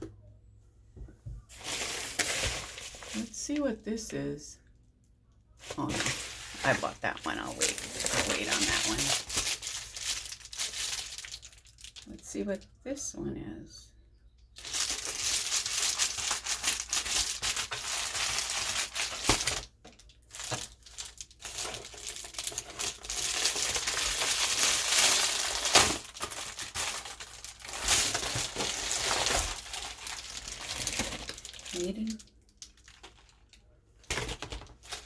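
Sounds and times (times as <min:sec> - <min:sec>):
package wrapping crinkling: 0:05.6 - 0:12.1, 0:14.6 - 0:35.0
wrapping being torn: 0:07.6 - 0:12.1, 0:14.6 - 0:35.0.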